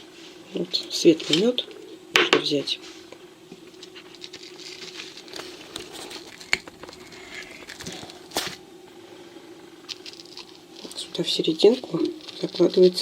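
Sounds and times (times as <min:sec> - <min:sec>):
faint hum: 0:00.0 - 0:13.0
soft rustling: 0:02.8 - 0:08.6.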